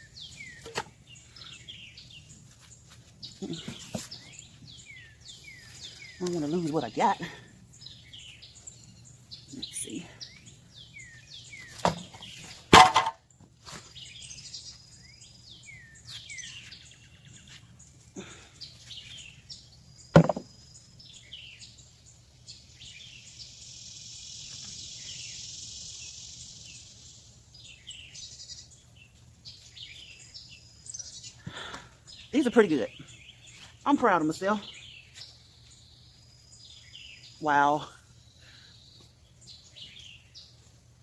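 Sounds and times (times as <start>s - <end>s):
birds chirping: 0.0s - 41.0s
digging knocks: 11.8s - 13.2s, 20.2s - 20.5s.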